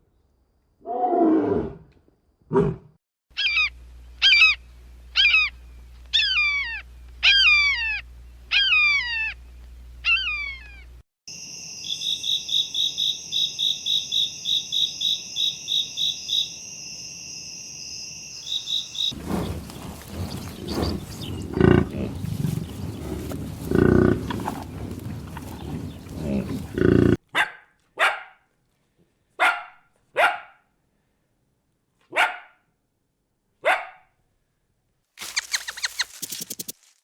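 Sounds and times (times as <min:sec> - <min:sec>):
dog barking: 0:27.3 - 0:28.5, 0:29.4 - 0:30.7, 0:32.1 - 0:32.7, 0:33.6 - 0:34.2.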